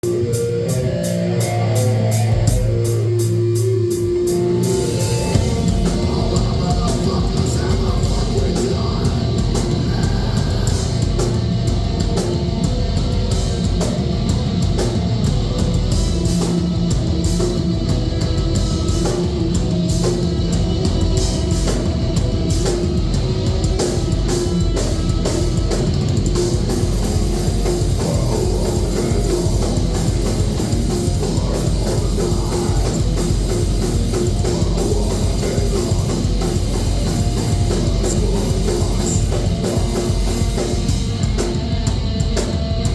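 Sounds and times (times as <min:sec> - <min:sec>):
distorted electric guitars: 0:00.0 - 0:42.9
fast dense drumming: 0:00.0 - 0:42.9.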